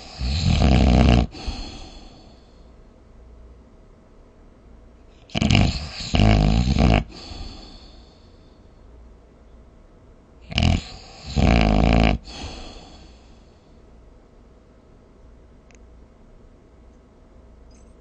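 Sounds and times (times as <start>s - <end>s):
person snoring: 0.0s - 2.5s, 5.3s - 8.3s, 10.5s - 13.5s.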